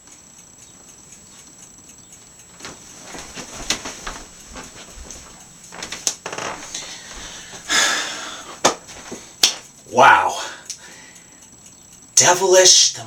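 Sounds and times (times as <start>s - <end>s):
handling knocks and clicks: 2.6s - 6.8s
rustling: 2.6s - 7.7s.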